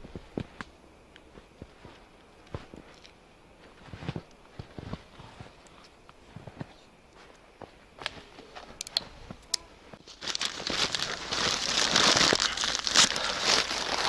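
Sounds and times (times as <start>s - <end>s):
newspaper crumpling and tearing: 10.0s - 14.0s.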